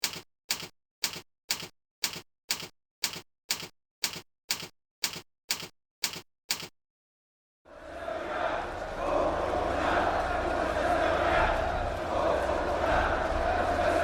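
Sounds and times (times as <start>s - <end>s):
clock ticking: 0.0s - 6.7s.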